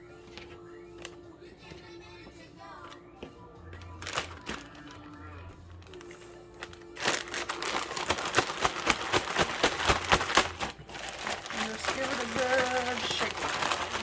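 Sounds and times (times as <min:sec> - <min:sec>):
soft background music: 0:00.0 - 0:14.0
plastic bag crinkling: 0:03.8 - 0:14.0.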